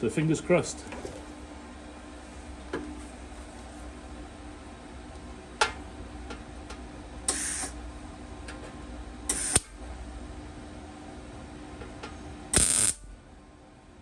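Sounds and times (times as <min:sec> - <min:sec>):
steady hum: 0:00.0 - 0:14.0
welder crackling bursts: 0:12.6 - 0:13.1.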